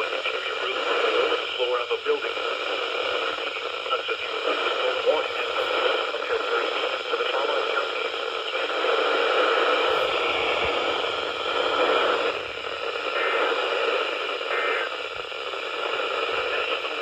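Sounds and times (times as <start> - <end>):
radio static hiss: 0.0 - 17.0.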